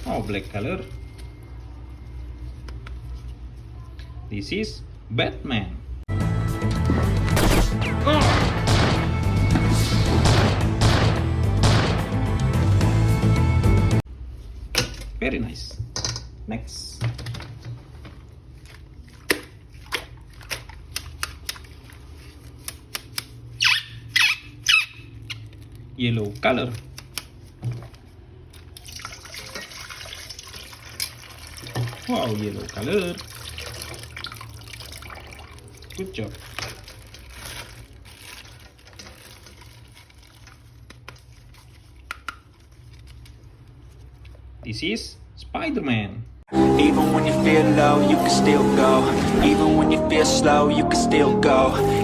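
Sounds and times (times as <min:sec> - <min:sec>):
water splashing and dribbling: 0:17.8 - 0:22.7, 0:27.5 - 0:44.5.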